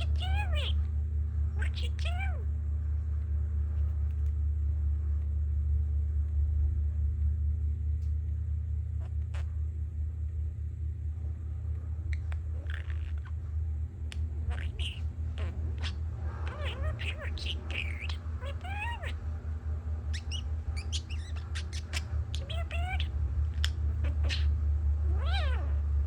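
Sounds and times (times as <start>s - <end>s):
budgie chirping: 0.0s - 0.8s, 1.6s - 2.4s, 12.1s - 13.4s, 14.1s - 19.2s, 20.0s - 24.5s, 25.1s - 25.8s
construction machinery rumble: 0.0s - 26.0s
faint clicks: 3.2s - 4.4s.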